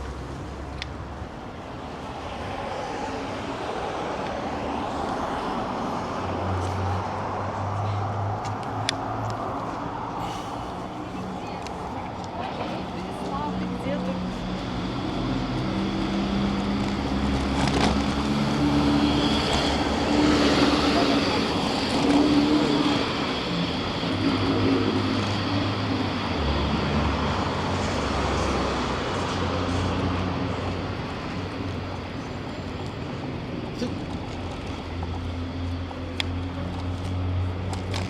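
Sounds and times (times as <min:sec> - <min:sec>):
vehicles passing: 0:00.0 - 0:38.0
car engines running: 0:04.2 - 0:38.0
passers-by talking: 0:05.9 - 0:26.7, 0:27.4 - 0:38.0.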